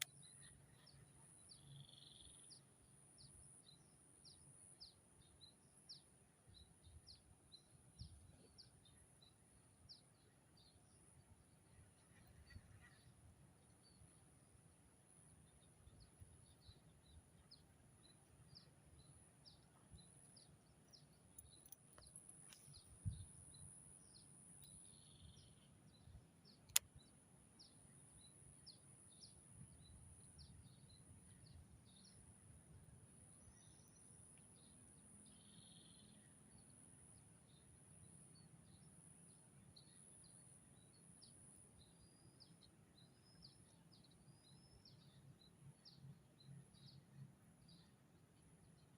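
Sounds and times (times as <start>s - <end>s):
bird chirps: 0.0s - 11.0s, 33.3s - 36.7s
sharp click: 26.7s - 27.0s.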